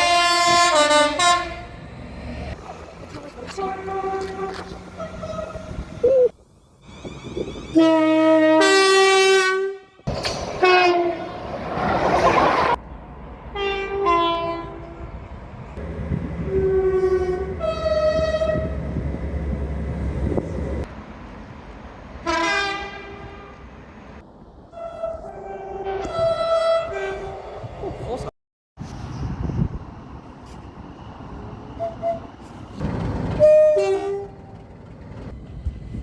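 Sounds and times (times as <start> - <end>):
train horn blasts: 0.0 - 1.7, 3.5 - 5.7, 7.7 - 11.4, 13.6 - 15.1, 16.2 - 19.0, 22.2 - 23.6, 24.7 - 27.5, 33.4 - 34.5
train rumble: 10.0 - 36.0.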